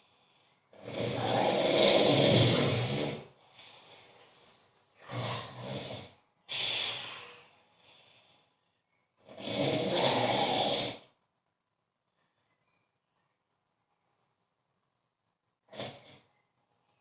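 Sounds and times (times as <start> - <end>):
man snoring: 0.7 - 3.4, 5.0 - 7.2, 9.2 - 11.1, 15.7 - 16.2.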